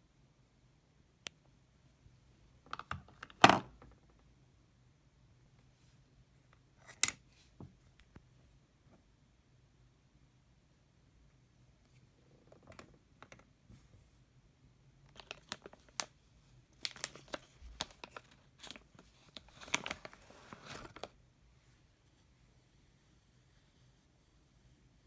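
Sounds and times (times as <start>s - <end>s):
plastic packaging crinkling and clicking: 15.1s - 16.2s, 16.8s - 21.2s.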